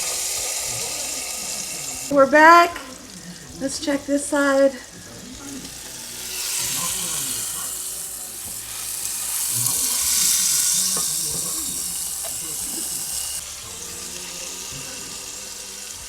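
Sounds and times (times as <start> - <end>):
steak sizzling in hot pan: 0.0 - 16.0.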